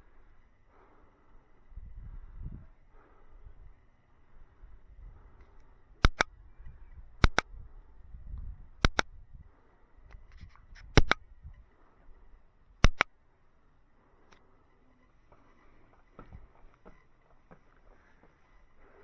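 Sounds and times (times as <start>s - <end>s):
faint outdoor background: 0.0s - 19.0s
sharp double clicks: 6.0s - 6.4s, 7.2s - 7.5s, 8.8s - 9.1s, 10.8s - 11.3s, 12.8s - 13.2s.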